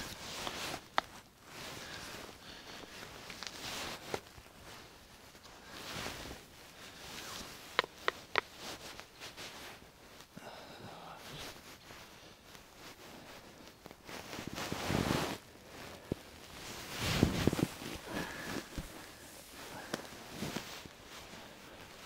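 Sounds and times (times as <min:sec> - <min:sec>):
camp gear rustling and knocking: 0:06.1 - 0:09.5, 0:16.0 - 0:22.0.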